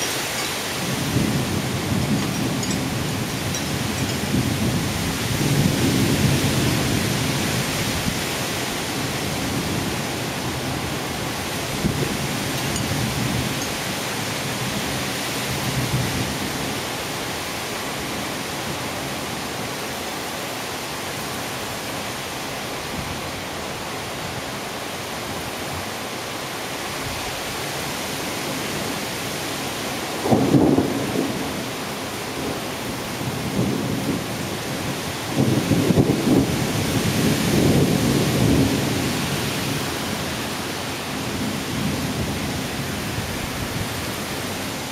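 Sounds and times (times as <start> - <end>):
thunder rumbling: 0.0 - 13.9, 30.1 - 32.6, 33.2 - 40.6
heavy rain pouring: 0.0 - 44.9.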